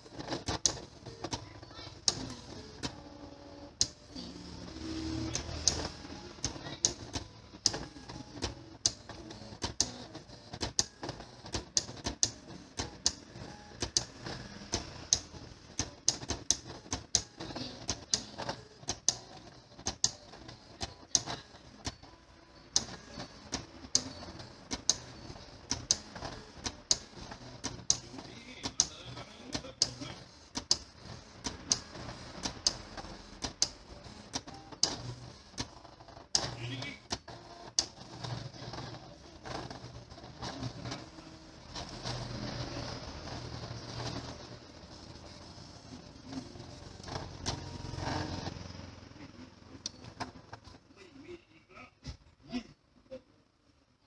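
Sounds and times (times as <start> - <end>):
plotter mechanism clicking: 5.1 - 22.0, 22.7 - 41.2.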